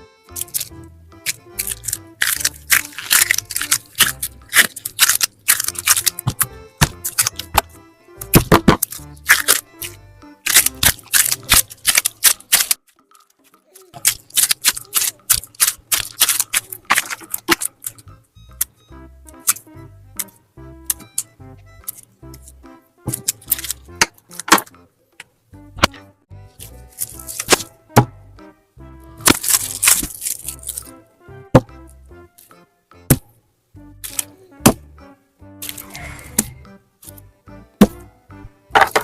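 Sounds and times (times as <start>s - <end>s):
soft background music: 0.0s - 39.0s
slime crackling in hands: 0.4s - 7.7s, 8.8s - 13.1s, 13.9s - 18.0s, 23.2s - 23.9s, 29.2s - 30.9s.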